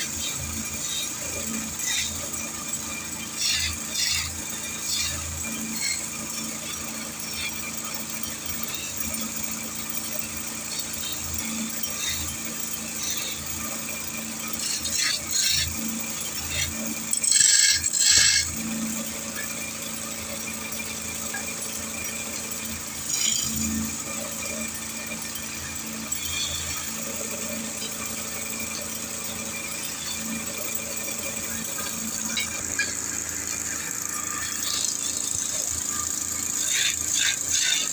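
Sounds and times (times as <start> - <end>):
wood lathe humming: 0.0 - 37.9
chisel scraping wood: 3.3 - 6.0, 14.5 - 15.8, 16.4 - 18.6, 31.8 - 37.9.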